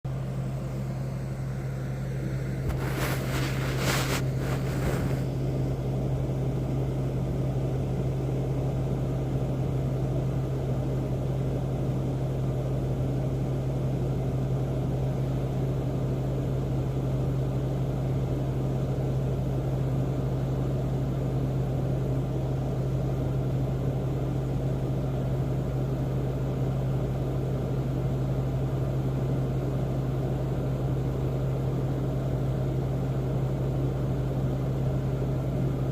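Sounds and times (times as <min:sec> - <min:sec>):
low mechanical drone: 0:00.1 - 0:11.1
brief rushing noises: 0:02.6 - 0:05.4.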